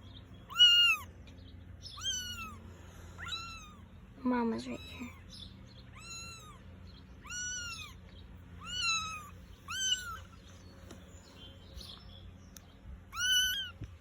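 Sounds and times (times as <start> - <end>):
kittens mewing: 0.4 - 1.2, 1.8 - 10.5, 13.0 - 14.0.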